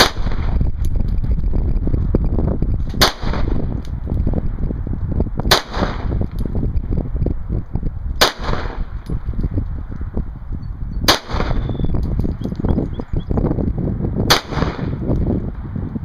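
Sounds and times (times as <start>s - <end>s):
wind buffeting microphone: 0.0s - 16.0s
pistol shots with echo: 5.5s - 6.1s, 8.2s - 8.9s, 11.1s - 11.8s, 14.3s - 14.9s.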